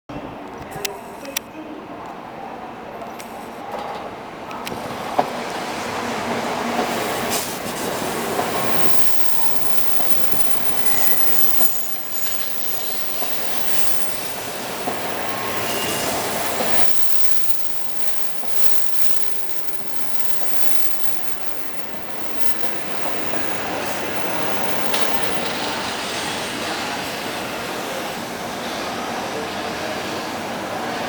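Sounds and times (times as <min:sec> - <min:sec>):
train wheel and running noise: 0:02.9 - 0:31.0
brake squeals: 0:08.6 - 0:26.8.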